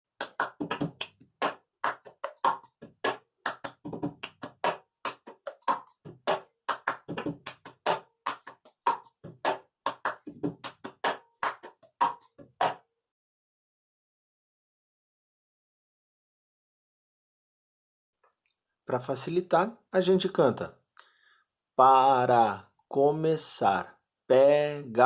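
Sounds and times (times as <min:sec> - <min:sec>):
hand claps: 0:00.1 - 0:12.8.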